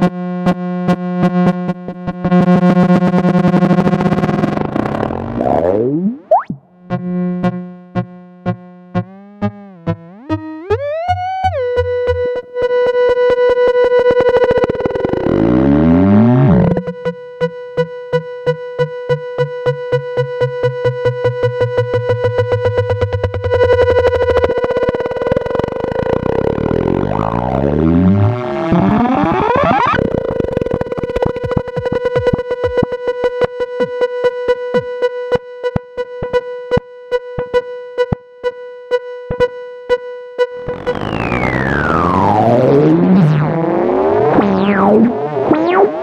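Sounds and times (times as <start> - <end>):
pulsing synthesizer drone: 2.3 - 36.3, 40.4 - 46.0
sweeping synth overtones: 4.4 - 6.8, 9.0 - 17.0, 21.1 - 32.3, 40.6 - 46.0.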